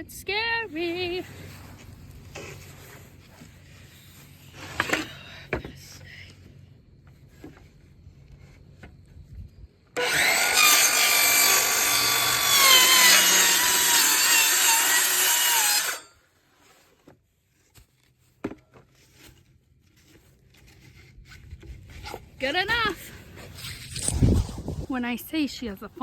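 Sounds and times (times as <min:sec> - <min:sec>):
power saw cutting wood: 0:10.0 - 0:16.2.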